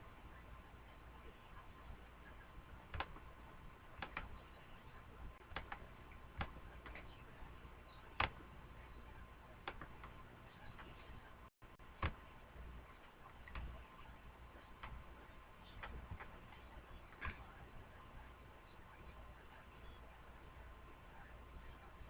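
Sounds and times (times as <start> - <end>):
faint steady hum: 0.0 - 22.0
light clicks and taps: 2.8 - 7.4, 8.0 - 8.5, 9.6 - 11.3.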